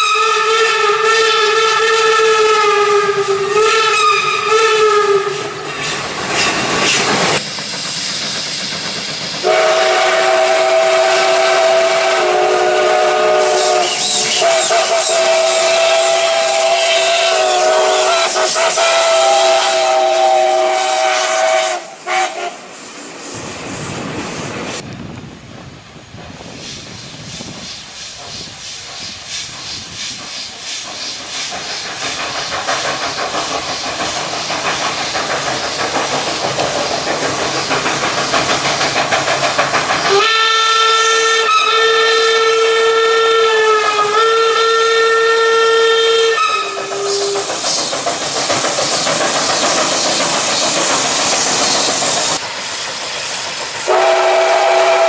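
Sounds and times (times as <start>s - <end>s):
train whistle: 0.0s - 5.6s, 9.4s - 22.7s, 40.0s - 47.5s, 53.8s - 55.0s
train wheel clatter: 1.4s - 25.3s, 26.0s - 42.6s, 45.6s - 55.0s
hissing: 2.4s - 24.8s, 26.5s - 41.3s, 46.7s - 55.0s.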